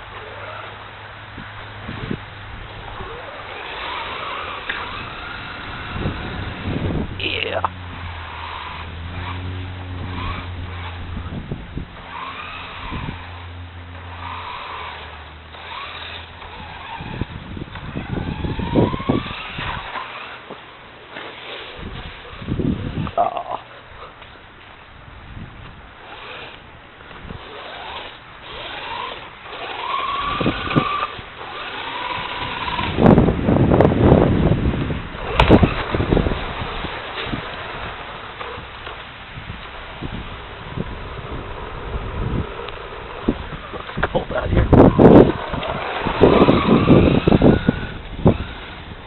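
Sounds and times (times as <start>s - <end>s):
toy car motor whining: 0.0s - 0.8s, 1.9s - 24.2s, 26.0s - 33.5s, 34.1s - 49.0s
steady low hum: 0.0s - 49.0s
rough rushing of car on ice: 27.2s - 49.0s.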